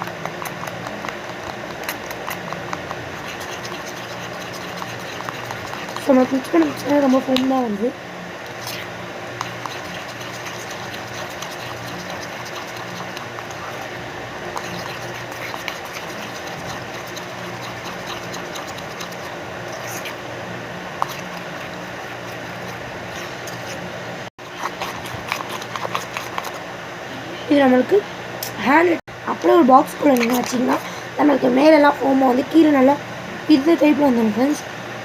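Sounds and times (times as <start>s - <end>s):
slime being stirred in a bowl: 0.0s - 7.7s, 8.5s - 20.2s, 21.0s - 26.6s, 30.0s - 30.8s
steady low hum: 0.0s - 35.0s.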